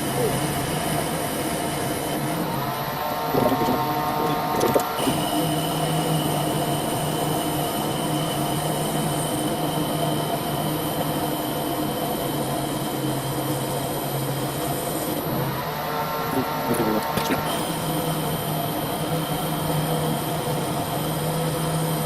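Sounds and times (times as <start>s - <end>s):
lathe running with high whine: 0.0s - 22.0s.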